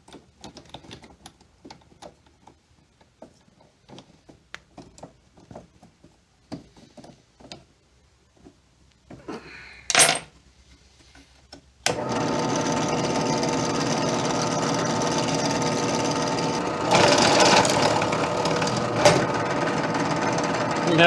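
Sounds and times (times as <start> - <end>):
electric drill drilling into copper: 11.9 - 21.0.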